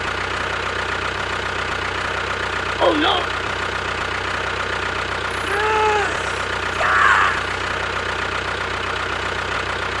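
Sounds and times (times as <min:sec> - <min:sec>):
brief vocal sounds: 0:05.3 - 0:07.6.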